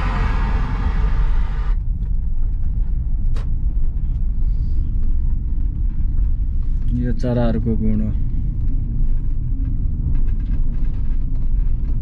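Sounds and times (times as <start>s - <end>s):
steady low rumble: 0.0s - 12.0s.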